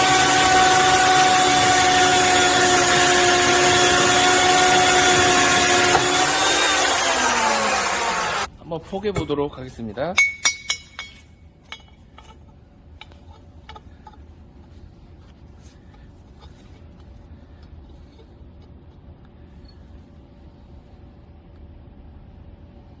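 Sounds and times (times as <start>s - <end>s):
band saw cutting: 0.0s - 8.5s.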